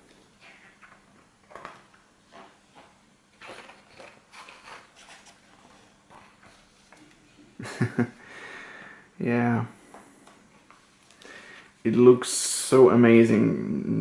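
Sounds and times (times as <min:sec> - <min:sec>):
book pages turning: 0:00.0 - 0:07.3
paper rustling: 0:00.4 - 0:07.3.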